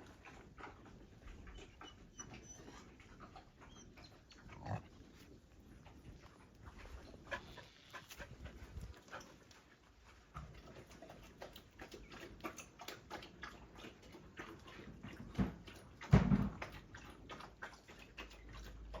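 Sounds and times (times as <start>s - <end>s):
thump: 16.1s - 16.6s.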